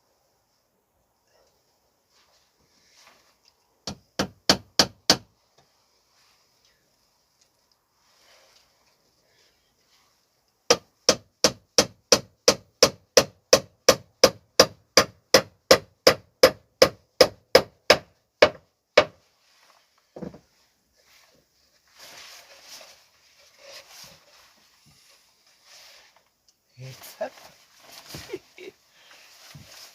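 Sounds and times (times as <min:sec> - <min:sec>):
rustling and scraping: 0:01.5 - 0:03.8, 0:05.4 - 0:10.5, 0:19.2 - 0:29.9
hammer striking a nail: 0:03.8 - 0:05.3, 0:10.7 - 0:19.2.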